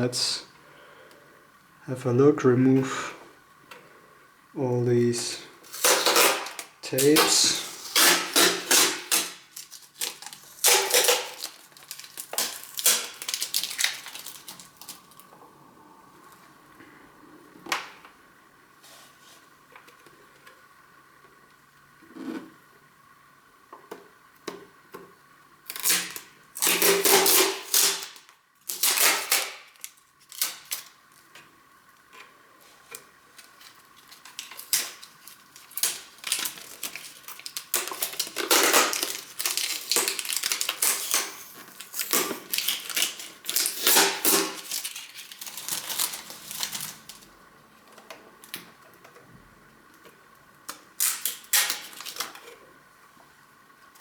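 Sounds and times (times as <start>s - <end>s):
packing tape tearing: 5.6s - 15.3s, 25.6s - 31.2s, 32.9s - 47.3s, 50.7s - 52.6s.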